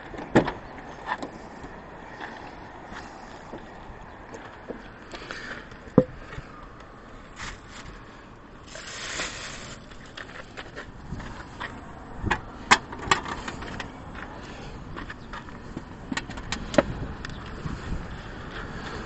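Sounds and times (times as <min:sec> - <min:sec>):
rustling scrape: 0:07.3 - 0:08.0, 0:08.7 - 0:10.8.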